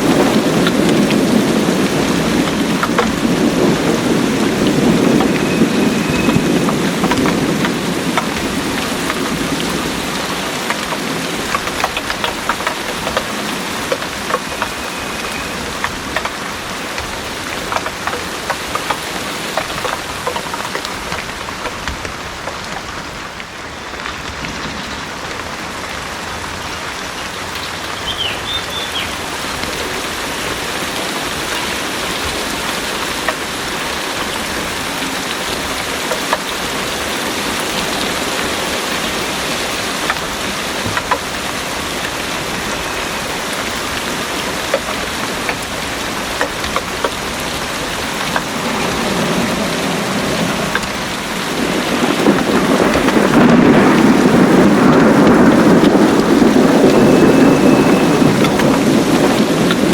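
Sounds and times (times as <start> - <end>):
heavy rain pouring: 0.0 - 59.9
water drops ticking: 4.4 - 21.3.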